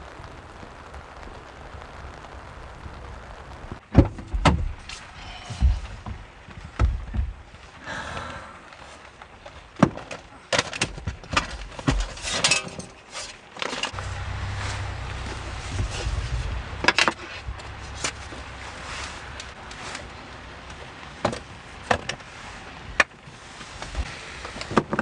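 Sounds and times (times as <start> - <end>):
steady low rumble: 0.0 - 3.8, 14.0 - 19.8.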